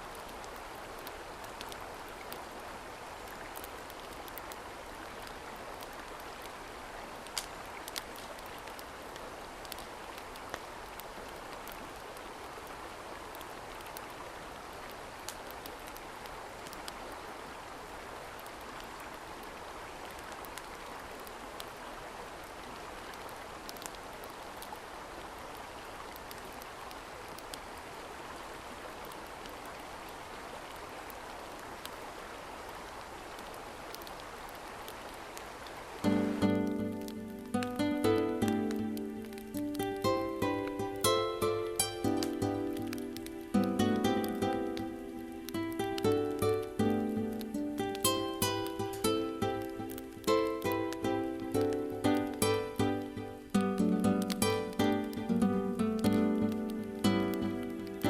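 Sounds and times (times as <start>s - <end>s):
mountain stream rushing: 0.0s - 58.0s
sharp pops and clicks: 7.2s - 8.8s, 36.0s - 58.0s.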